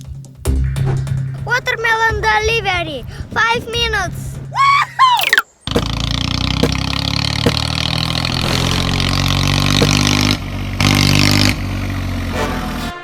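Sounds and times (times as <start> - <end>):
vehicle engine running: 5.8 - 12.3.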